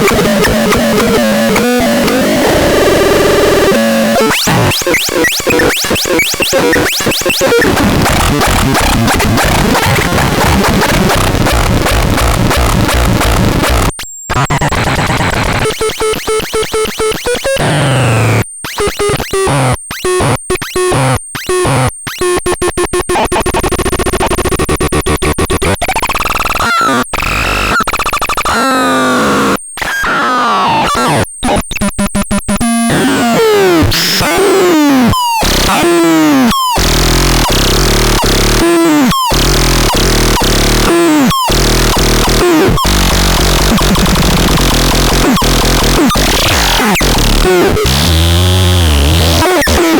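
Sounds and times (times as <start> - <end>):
harsh synthesized buzz: 0.0 - 16.0, 31.8 - 49.9
chopped pulsing tones: 35.7 - 49.9.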